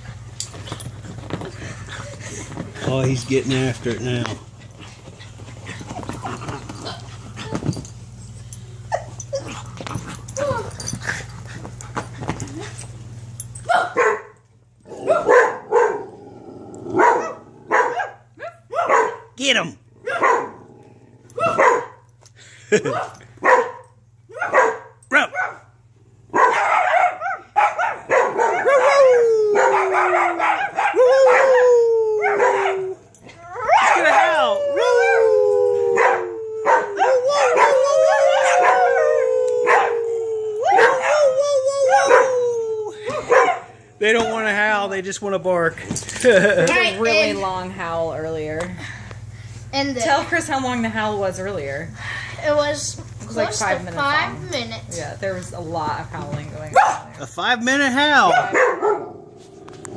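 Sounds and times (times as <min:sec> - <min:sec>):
dog whining and yipping: 0:08.9 - 0:09.7, 0:28.5 - 0:39.9, 0:40.6 - 0:43.4
dogs barking: 0:13.7 - 0:16.2, 0:17.0 - 0:19.4, 0:20.0 - 0:20.6, 0:21.4 - 0:22.1, 0:22.8 - 0:35.2, 0:36.0 - 0:40.0, 0:40.7 - 0:42.4, 0:43.0 - 0:44.3, 0:56.7 - 0:57.2, 0:58.1 - 0:59.3.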